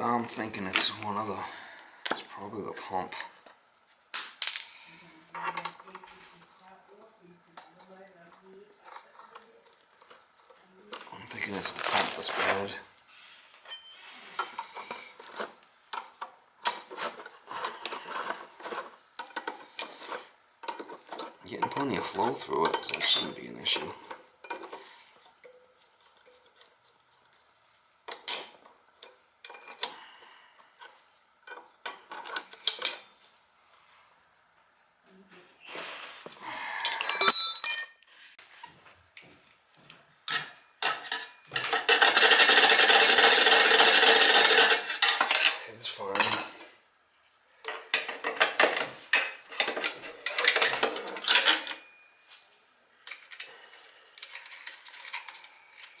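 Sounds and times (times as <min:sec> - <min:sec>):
metal tools clinking: 0:19.2 - 0:24.8, 0:31.5 - 0:33.7, 0:36.8 - 0:38.1, 0:48.0 - 0:52.1.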